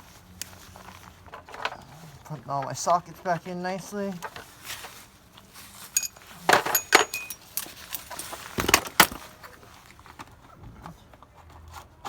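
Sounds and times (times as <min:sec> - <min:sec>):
metal sockets clinking: 0:06.0 - 0:09.2.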